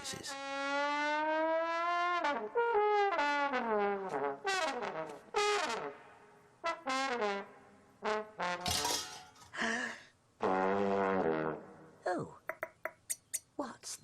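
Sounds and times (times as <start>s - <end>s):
homemade trombone blowing: 0.0s - 6.0s, 6.6s - 9.3s, 10.4s - 11.8s.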